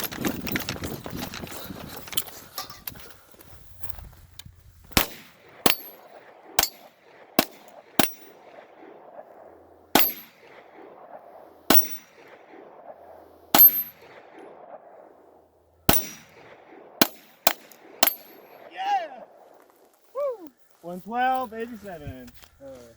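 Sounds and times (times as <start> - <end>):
pistol shots: 5.0 - 9.2, 9.9 - 15.2, 15.9 - 18.8.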